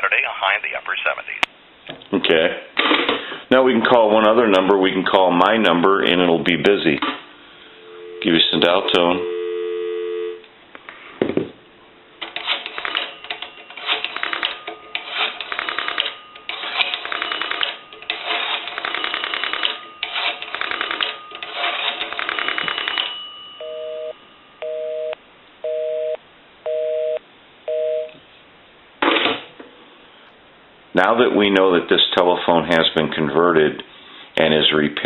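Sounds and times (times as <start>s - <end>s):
two-tone busy signal beeps: 23.6s - 28.1s.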